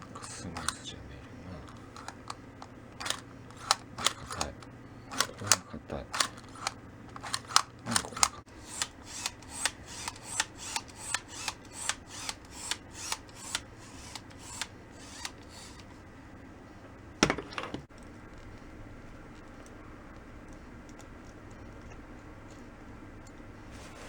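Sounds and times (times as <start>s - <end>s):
lens parts clicking: 0.2s - 0.8s, 1.6s - 15.9s.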